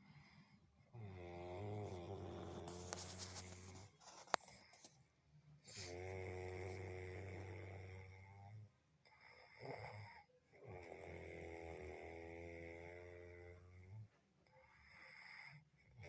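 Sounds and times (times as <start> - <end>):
person snoring: 0.9 - 3.8, 5.7 - 14.1.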